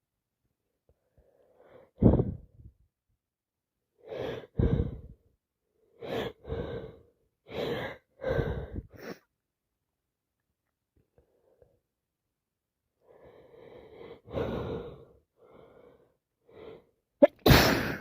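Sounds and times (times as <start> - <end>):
woman sneezing hard: 17.2 - 18.0.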